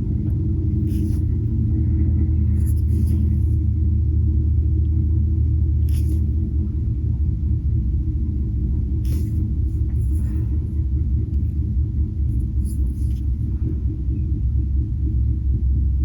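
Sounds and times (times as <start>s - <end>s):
low rumble and hum: 0.0s - 16.0s
faint short scratches: 0.6s - 3.6s, 5.8s - 6.4s, 9.0s - 10.6s, 12.2s - 13.6s.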